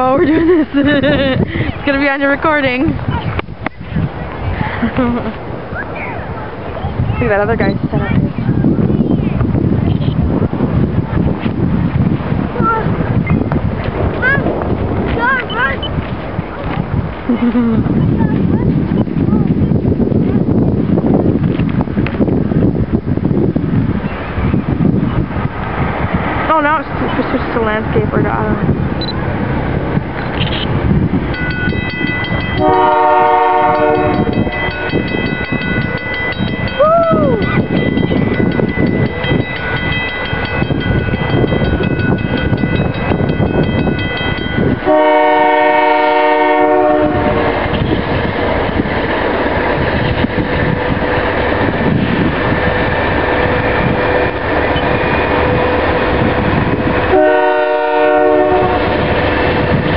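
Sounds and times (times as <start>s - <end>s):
moving train rumble: 0.0s - 59.9s
locomotive air horn blasts: 32.6s - 34.9s, 44.8s - 47.9s, 57.1s - 59.2s.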